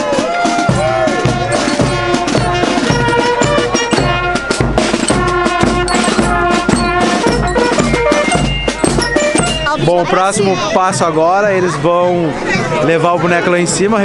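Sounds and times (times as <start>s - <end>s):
music with drums and percussion: 0.0s - 11.2s.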